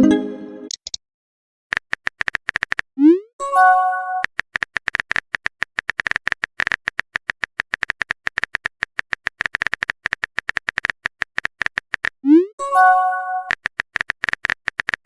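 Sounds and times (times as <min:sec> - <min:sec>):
rapid typing clicks: 0:01.7 - 0:02.9, 0:04.2 - 0:12.2, 0:13.5 - 0:15.0.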